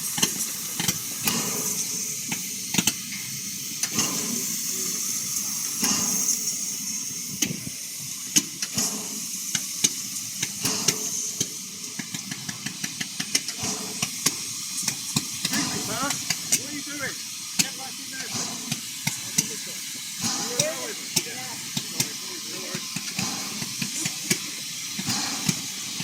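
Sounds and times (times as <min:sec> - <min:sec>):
steam locomotive hissing: 0:00.0 - 0:26.0
sharp clicks and knocks: 0:08.3 - 0:16.7.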